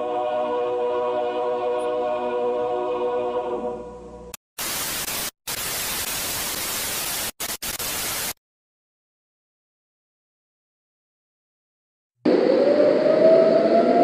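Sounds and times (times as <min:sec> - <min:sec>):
music: 0:00.0 - 0:04.4
white-noise static hissing: 0:04.6 - 0:08.4.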